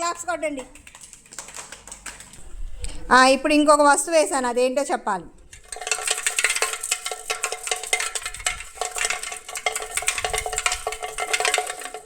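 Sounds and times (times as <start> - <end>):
chalk rattling in shaken box: 5.4 - 12.0.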